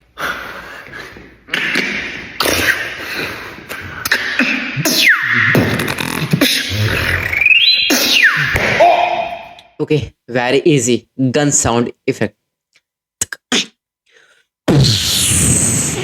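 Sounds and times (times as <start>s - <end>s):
beatboxing hissing buzzing bursts: 4.0s - 8.3s.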